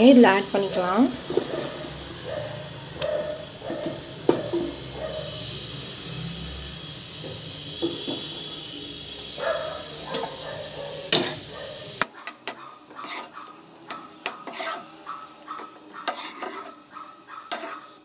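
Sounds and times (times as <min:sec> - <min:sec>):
spoon stirring pasta in sauce: 0:01.1 - 0:05.5, 0:09.7 - 0:18.0
spoon scraping and clinking on pan: 0:01.2 - 0:02.3, 0:03.1 - 0:05.1, 0:07.8 - 0:08.6, 0:09.8 - 0:18.0.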